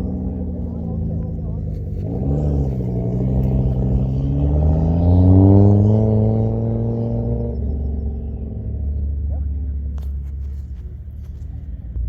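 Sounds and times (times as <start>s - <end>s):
race car engine running hard: 0.0s - 12.0s.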